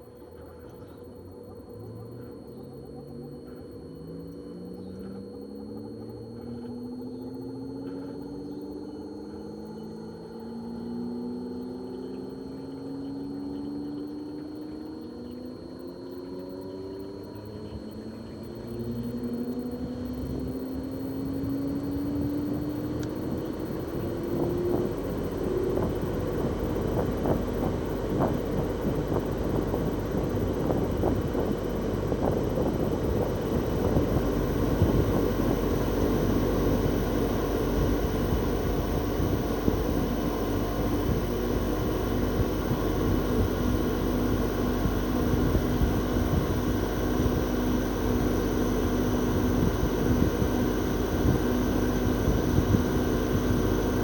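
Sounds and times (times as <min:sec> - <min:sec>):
air conditioner compressor whine: 0:00.0 - 0:54.0
rushing rumble: 0:24.2 - 0:54.0.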